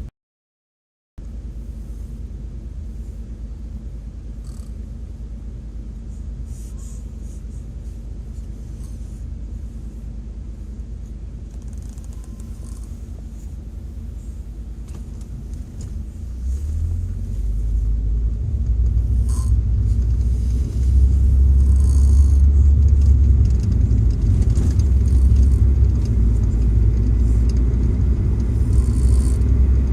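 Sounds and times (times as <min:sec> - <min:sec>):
car road rumble from inside: 0:01.2 - 0:29.9.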